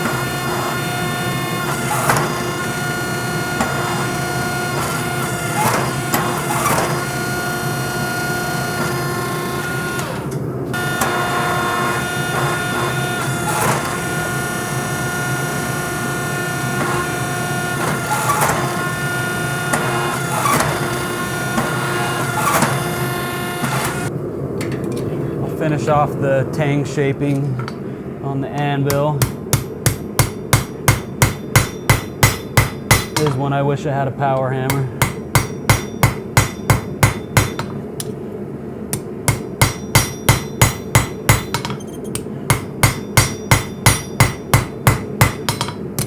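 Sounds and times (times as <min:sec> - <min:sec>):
forge blower hum: 0:00.0 - 0:46.0
hammer ringing on anvil: 0:28.9 - 0:33.5, 0:34.7 - 0:37.8, 0:39.3 - 0:45.8.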